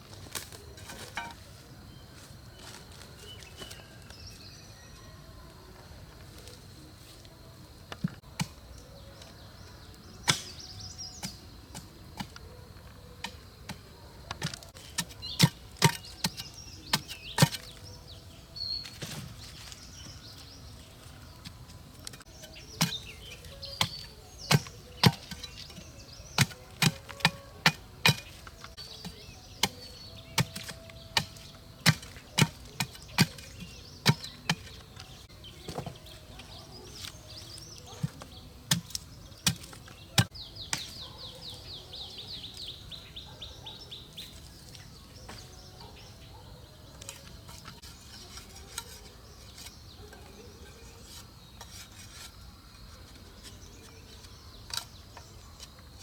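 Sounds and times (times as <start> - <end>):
blade chopping wood: 22.4 - 34.9.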